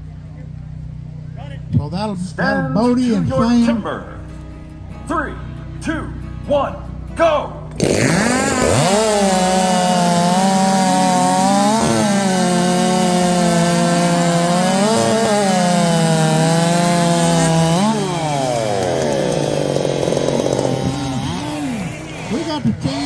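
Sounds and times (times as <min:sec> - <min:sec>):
chainsaws cutting through log: 0:07.7 - 0:23.0.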